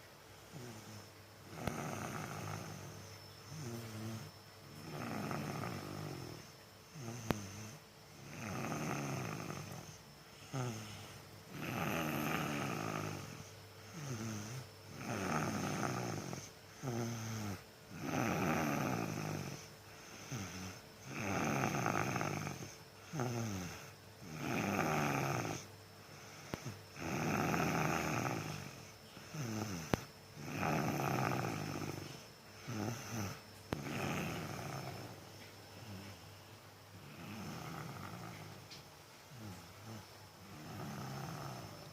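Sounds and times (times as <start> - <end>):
child snoring: 0.0 - 36.4, 37.0 - 41.9.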